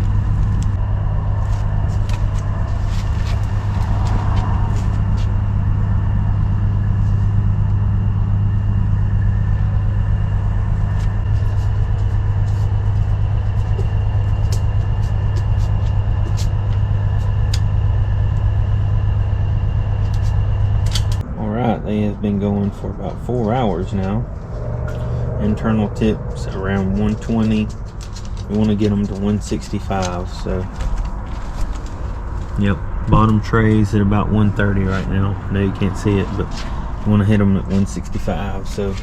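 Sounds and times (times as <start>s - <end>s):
motor humming: 0.0s - 21.3s.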